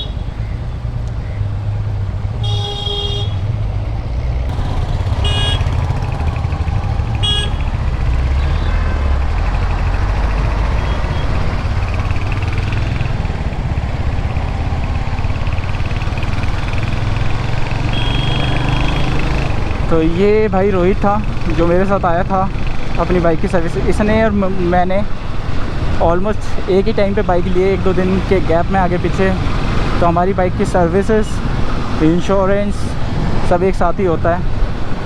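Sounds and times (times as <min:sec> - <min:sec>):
vehicle horn honking: 0:00.0 - 0:00.4, 0:02.4 - 0:03.6, 0:04.6 - 0:09.2, 0:17.8 - 0:19.3
motorcycle engine rumble: 0:00.0 - 0:32.2.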